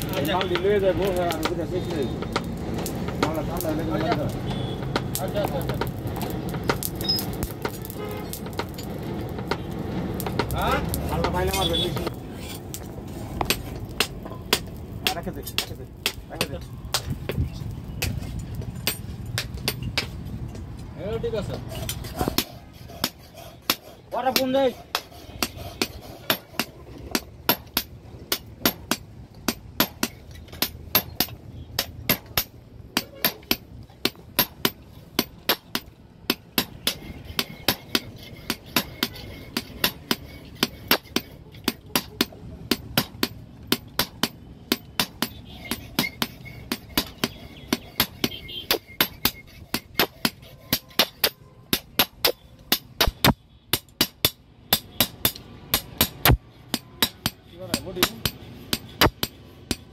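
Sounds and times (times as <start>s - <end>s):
hammer striking steel on anvil: 22.3s - 59.9s.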